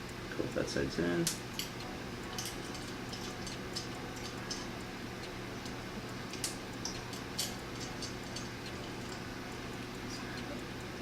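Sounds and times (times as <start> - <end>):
steady low hum: 0.0 - 11.0
light metallic clicks of parts: 5.6 - 9.2.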